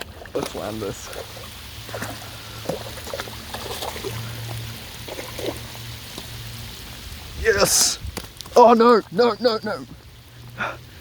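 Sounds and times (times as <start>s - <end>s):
pouring rain: 0.0s - 11.0s.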